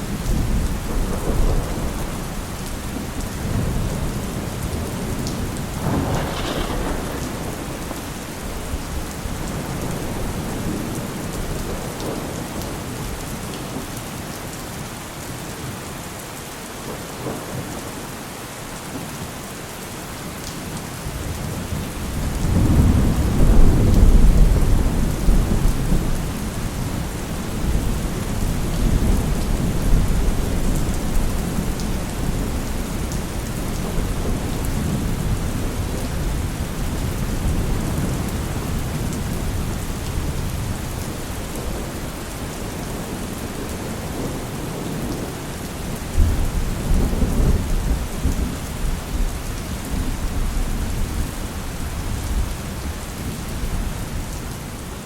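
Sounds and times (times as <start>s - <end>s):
heavy rain falling: 0.0s - 55.0s
rolling thunder: 0.1s - 13.2s, 21.7s - 42.0s.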